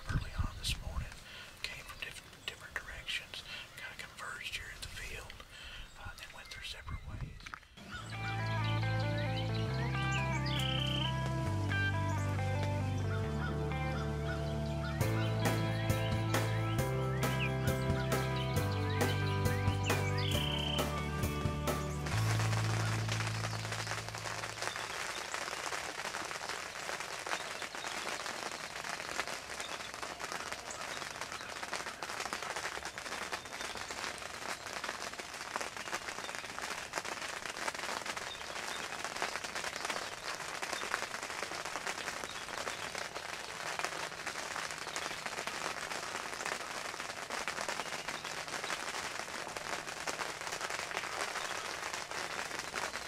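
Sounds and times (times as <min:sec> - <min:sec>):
steady rain falling: 0:09.6 - 0:13.4, 0:14.9 - 0:53.0.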